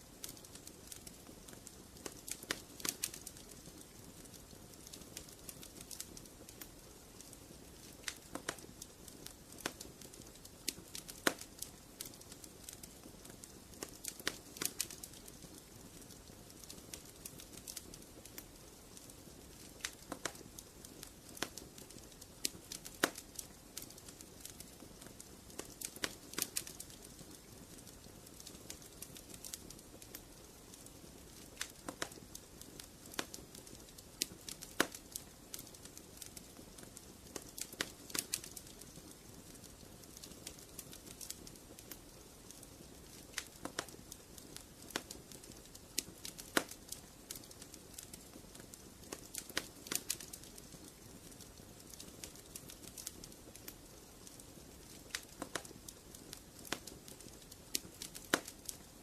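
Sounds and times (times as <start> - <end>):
hiss of burning: 0.0 - 59.0
wood fire crackling and popping: 0.0 - 59.0.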